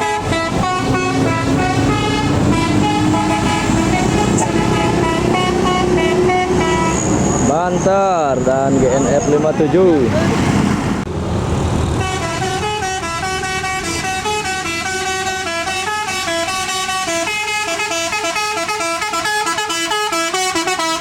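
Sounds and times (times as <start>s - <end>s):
bus horn playing a tune: 0.0s - 7.6s, 11.9s - 21.0s
bus engine: 0.0s - 21.0s.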